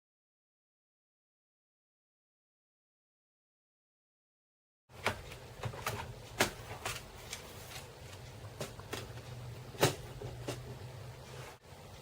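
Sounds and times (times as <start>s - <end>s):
low steady hum: 4.9s - 12.0s.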